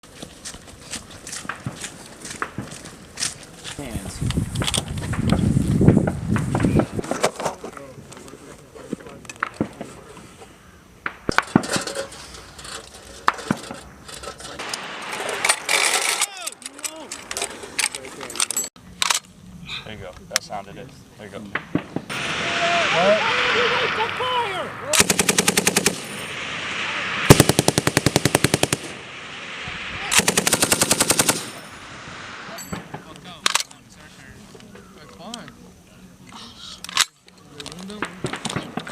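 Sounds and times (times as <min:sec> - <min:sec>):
machine gun automatic fire: 0:25.0 - 0:26.3, 0:27.3 - 0:29.0, 0:30.1 - 0:31.6.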